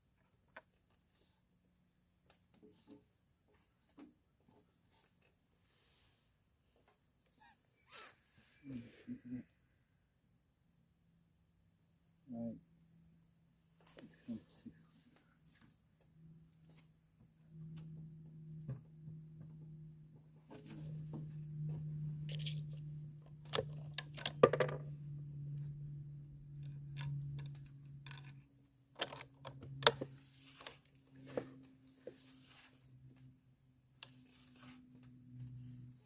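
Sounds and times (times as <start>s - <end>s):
steady low hum: 12.3s - 36.0s.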